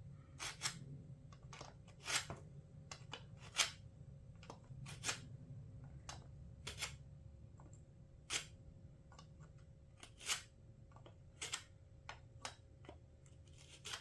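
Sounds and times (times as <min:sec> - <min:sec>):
blade scraping on sharpener: 0:01.9 - 0:02.3.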